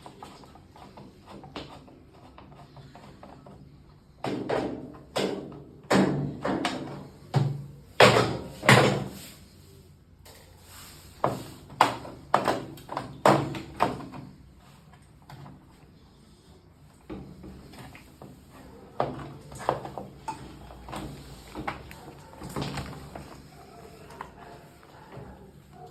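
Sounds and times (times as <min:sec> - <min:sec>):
hard knocks on washing machine: 0:04.2 - 0:09.2, 0:11.3 - 0:14.2.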